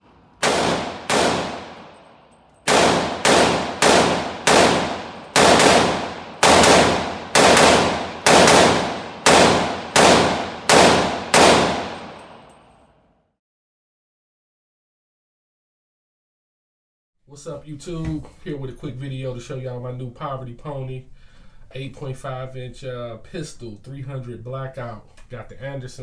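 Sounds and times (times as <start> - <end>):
gunshots with echoing decay: 0.0 - 12.8.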